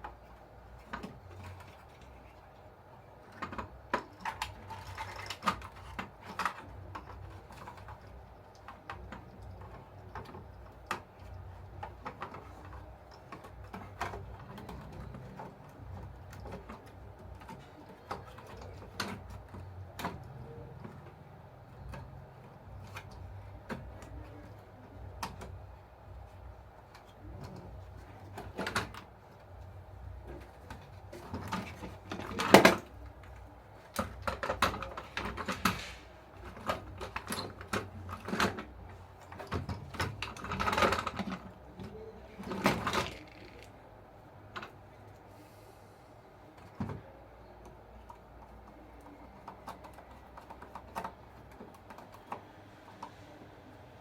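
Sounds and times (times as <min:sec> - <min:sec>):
plastic parts and tools clicking: 0:00.0 - 0:43.8, 0:46.4 - 0:54.0.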